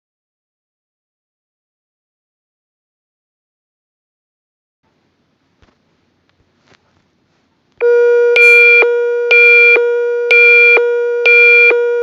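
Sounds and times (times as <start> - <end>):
pulsing high alert tone: 7.8 - 12.0
steady low alert tone: 7.8 - 12.0.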